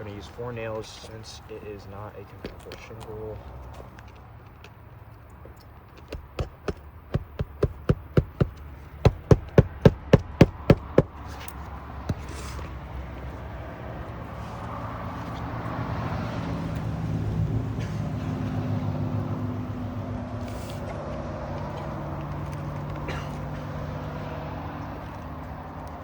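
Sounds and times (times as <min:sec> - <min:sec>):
hammer striking nails: 0:06.0 - 0:11.2.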